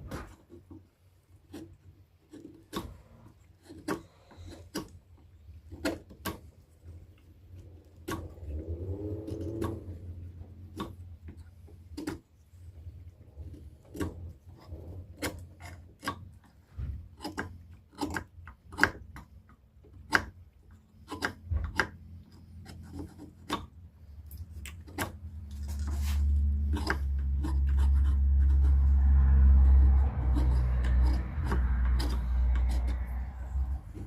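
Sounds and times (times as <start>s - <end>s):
knife scraping wood: 0.0s - 34.0s
loud low rumble: 25.9s - 34.0s.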